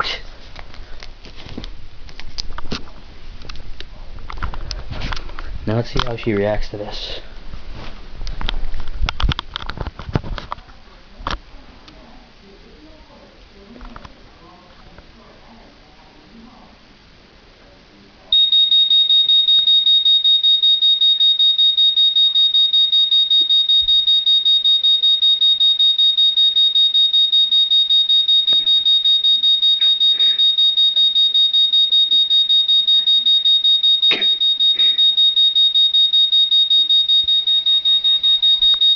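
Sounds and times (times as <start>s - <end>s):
high-pitched electronic beeping: 18.4s - 38.9s.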